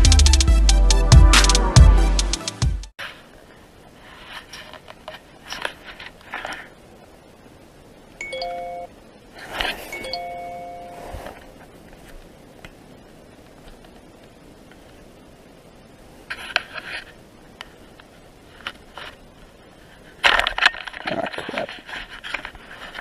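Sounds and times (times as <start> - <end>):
rustling and handling noises: 3.0 - 7.4, 8.5 - 15.2, 16.1 - 23.0
electronic chime tones: 8.2 - 8.9, 10.0 - 11.2.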